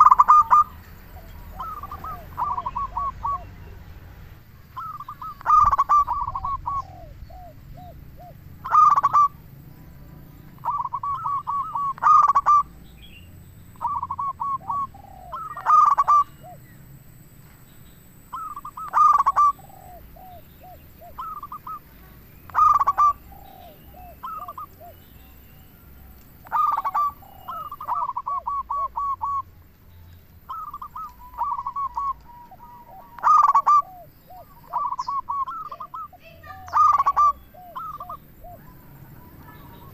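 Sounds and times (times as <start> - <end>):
dove cooing: 0.0 - 3.8, 4.6 - 9.5, 10.4 - 13.1, 13.7 - 16.9, 17.8 - 29.5, 30.5 - 39.9.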